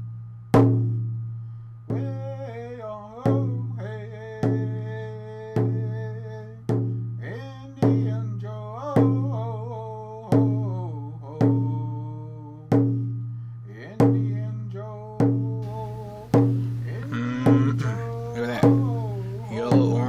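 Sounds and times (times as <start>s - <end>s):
slow drum beat: 15.2s - 20.0s
person singing: 15.6s - 20.0s.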